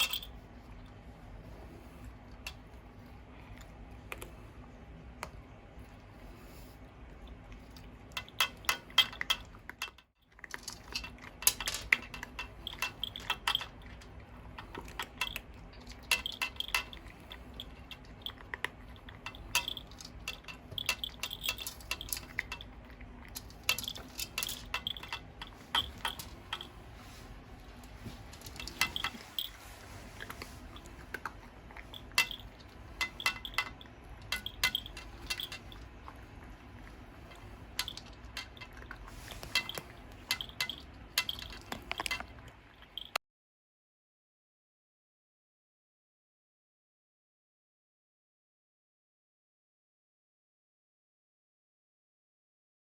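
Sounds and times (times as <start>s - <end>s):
ventilation fan hum: 0.0s - 43.1s
pet crunching dry kibble: 6.2s - 43.2s.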